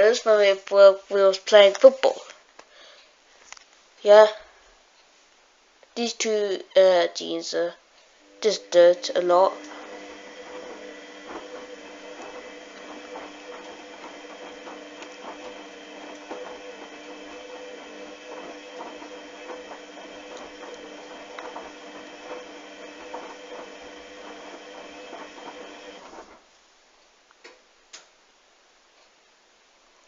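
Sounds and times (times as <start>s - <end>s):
steady mechanical hum: 7.8s - 26.4s.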